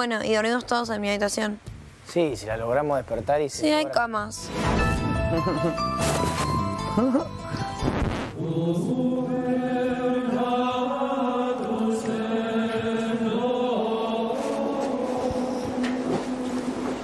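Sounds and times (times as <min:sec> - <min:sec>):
low chanting vocal drone: 0:08.3 - 0:16.8.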